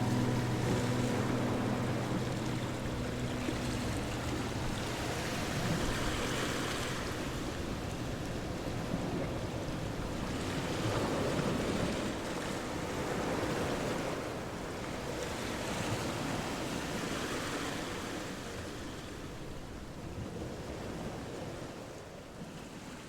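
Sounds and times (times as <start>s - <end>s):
ocean surf breaking: 0.0s - 11.2s.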